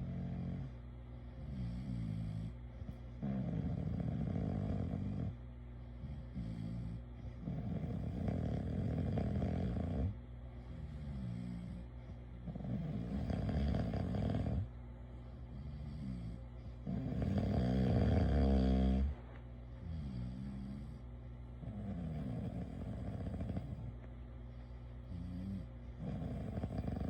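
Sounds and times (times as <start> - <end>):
person snoring: 12.5 - 14.7, 15.5 - 19.1, 25.1 - 27.0.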